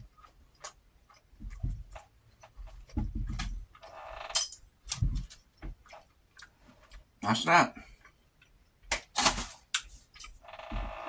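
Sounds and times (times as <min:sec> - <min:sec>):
cutlery and dishes clinking: 0:04.4 - 0:04.6.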